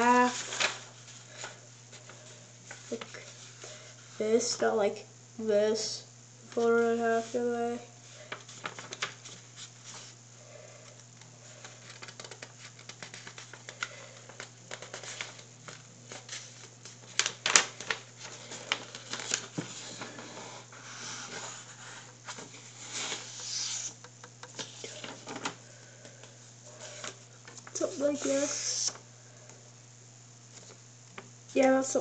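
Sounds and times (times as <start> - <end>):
paper rustling and creasing: 0.0 - 4.4, 6.5 - 10.2, 10.8 - 25.6
steady low hum: 0.0 - 32.0.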